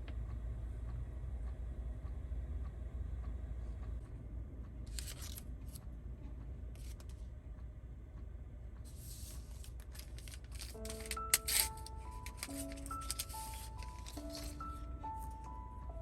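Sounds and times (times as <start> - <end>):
low steady rumble: 0.0 - 16.0
rustling and crinkling handling: 8.9 - 15.5.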